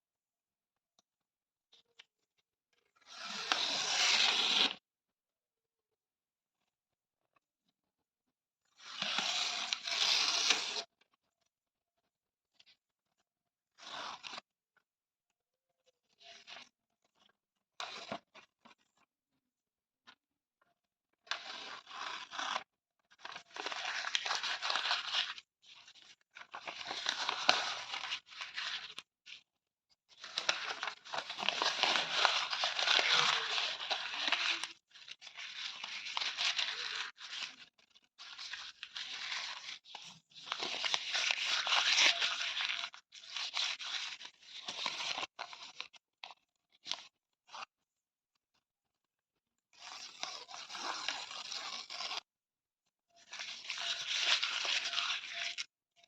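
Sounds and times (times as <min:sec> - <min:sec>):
paper tearing: 0:03.1 - 0:04.7, 0:30.2 - 0:37.6.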